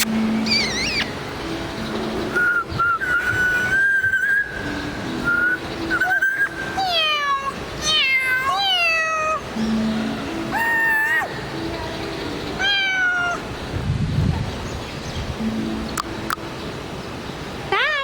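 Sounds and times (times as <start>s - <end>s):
parrot meow-like calls: 0.0s - 1.1s, 12.6s - 13.5s
parrot whistling: 0.0s - 7.6s.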